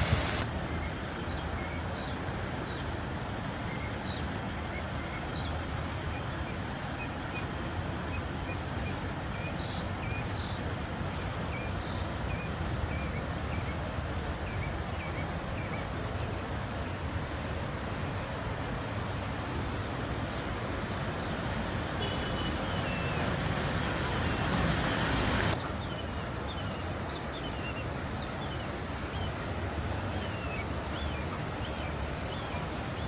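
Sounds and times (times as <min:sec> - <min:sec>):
steady rushing noise: 0:00.0 - 0:01.3, 0:10.0 - 0:25.6
small birds chirping: 0:21.9 - 0:28.6.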